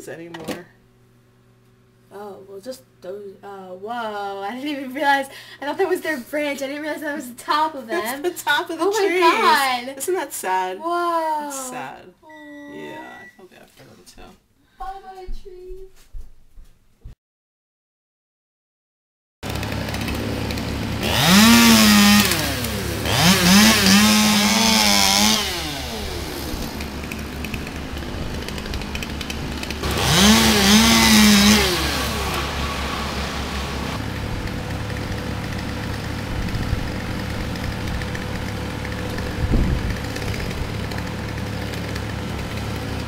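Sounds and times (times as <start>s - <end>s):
chainsaw revving: 19.4s - 43.0s.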